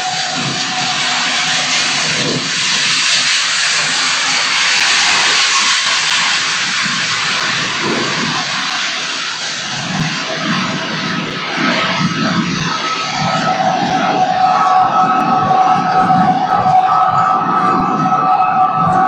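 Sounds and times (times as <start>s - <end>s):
loud rushing hiss: 0.0s - 11.3s
low rumble: 0.0s - 19.0s.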